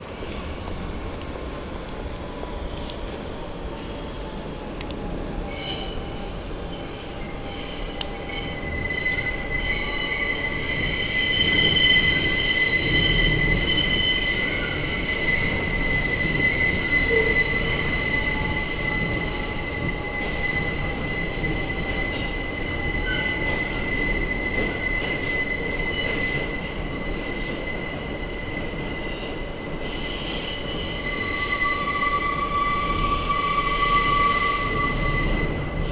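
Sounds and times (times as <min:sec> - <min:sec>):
train wheels screeching on rails: 0:05.4 - 0:35.9.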